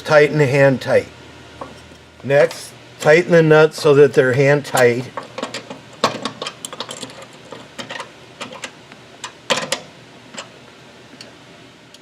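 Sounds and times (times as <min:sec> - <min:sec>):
metal clatter: 0:05.2 - 0:08.7.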